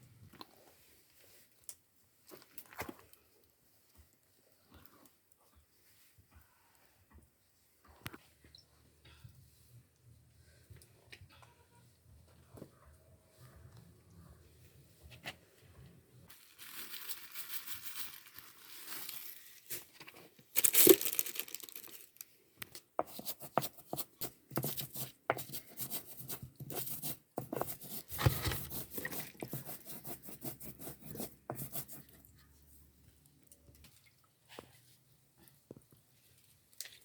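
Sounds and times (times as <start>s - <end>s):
crackles and rustles: 12.2s - 22.8s
paper tearing and crumpling: 20.6s - 22.0s.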